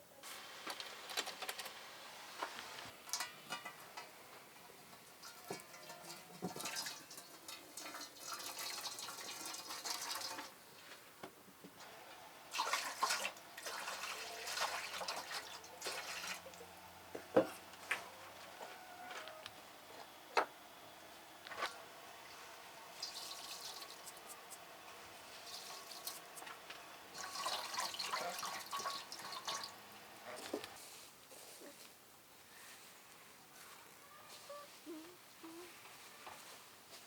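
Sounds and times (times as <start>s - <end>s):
water pouring and splashing: 5.1s - 10.6s, 12.5s - 16.7s, 22.9s - 24.6s, 25.2s - 30.6s.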